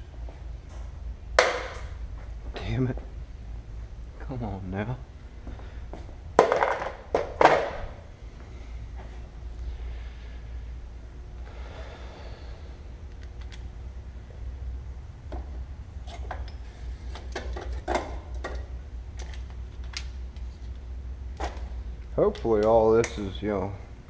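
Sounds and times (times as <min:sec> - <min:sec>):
steady low hum: 0:00.0 - 0:24.0
metal tools clinking on metal: 0:16.0 - 0:20.3.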